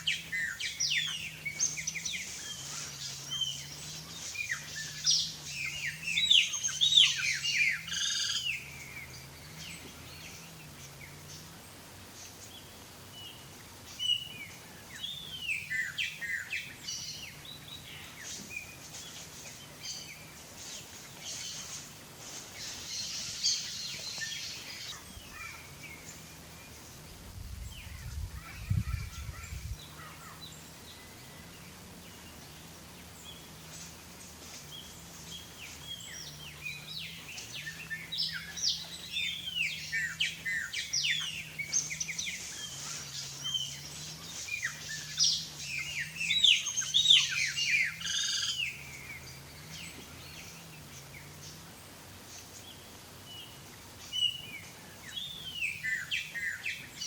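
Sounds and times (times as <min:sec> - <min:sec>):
ibises calling: 0:34.5 - 0:51.7.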